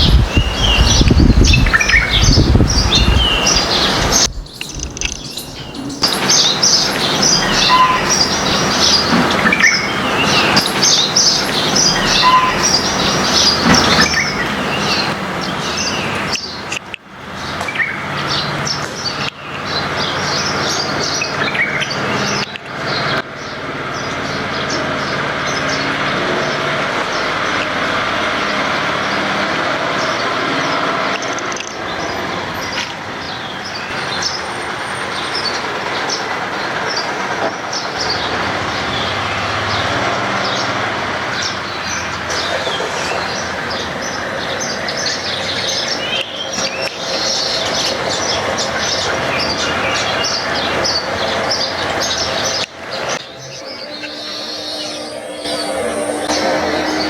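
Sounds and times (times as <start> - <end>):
steady noisy rumble: 0.0 - 17.4
small birds chirping: 0.0 - 27.8, 41.4 - 57.0.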